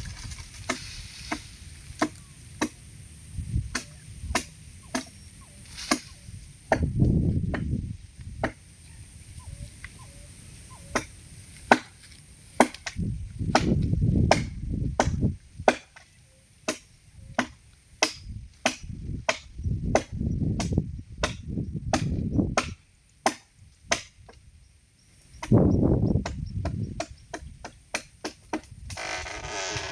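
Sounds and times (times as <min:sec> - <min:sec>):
chopping strikes on wood: 0:00.7 - 0:02.8, 0:03.7 - 0:05.1, 0:06.7 - 0:06.9, 0:08.4 - 0:08.6, 0:10.9 - 0:11.1, 0:11.7 - 0:12.0, 0:12.6 - 0:16.0, 0:17.4 - 0:24.4, 0:26.2 - 0:28.7.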